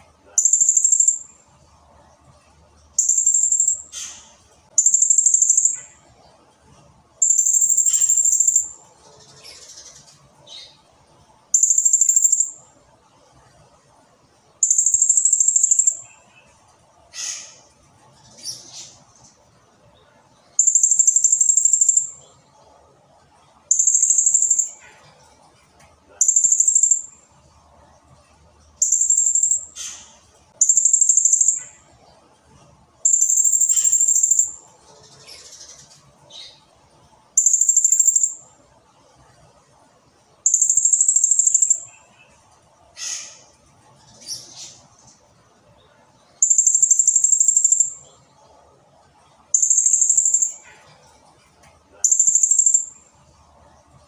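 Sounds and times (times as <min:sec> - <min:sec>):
parrot shrill trilled calls: 0:33.1 - 0:34.5.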